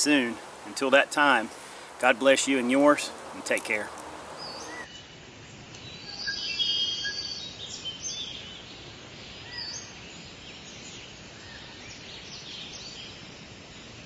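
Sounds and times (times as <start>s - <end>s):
small birds chirping: 0.0s - 5.0s
outdoor background hiss: 0.0s - 14.0s.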